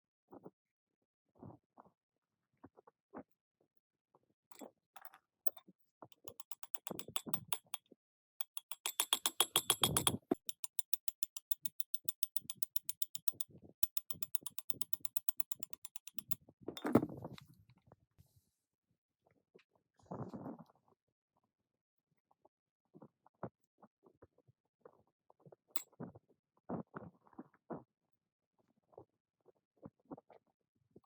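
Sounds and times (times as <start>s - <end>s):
fast even clicking: 6.2s - 7.8s, 8.4s - 16.4s.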